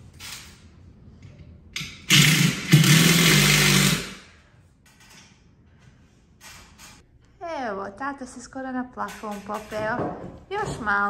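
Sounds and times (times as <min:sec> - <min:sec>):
power tool motor running: 0:02.1 - 0:04.2.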